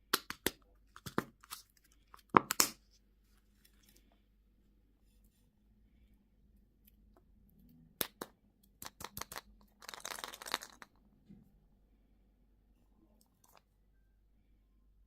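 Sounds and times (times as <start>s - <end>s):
wrapper crinkling and tearing: 9.1s - 10.9s.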